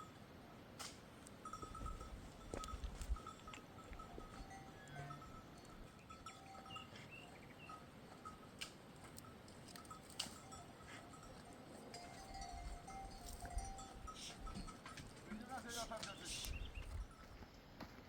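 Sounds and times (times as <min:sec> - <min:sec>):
animal bells clinking: 0:00.0 - 0:17.6.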